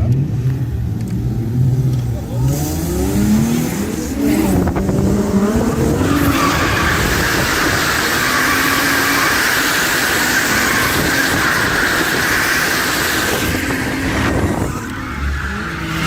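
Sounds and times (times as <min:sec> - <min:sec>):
car engine revving: 0:00.0 - 0:16.0
tyre squeal: 0:05.7 - 0:16.0.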